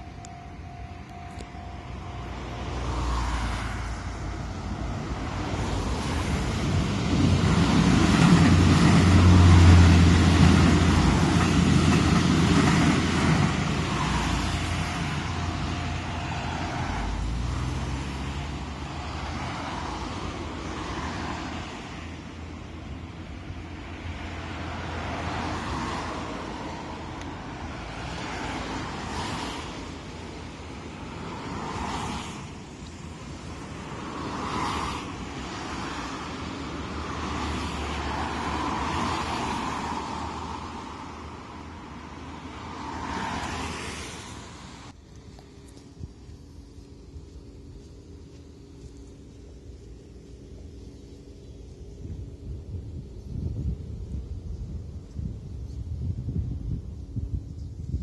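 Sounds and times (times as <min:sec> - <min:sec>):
passing traffic rumble: 0:00.0 - 0:58.0.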